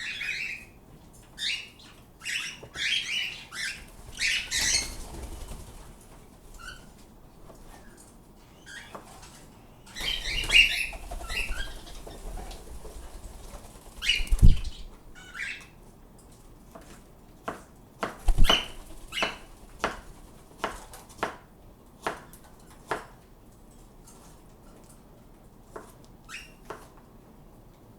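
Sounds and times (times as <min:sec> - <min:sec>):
small birds chirping: 0:00.0 - 0:05.8, 0:07.8 - 0:15.8, 0:18.2 - 0:20.3
birds fluttering wings: 0:03.9 - 0:06.9, 0:10.0 - 0:15.0, 0:18.2 - 0:21.0
sharp taps and knocks: 0:17.5 - 0:21.4.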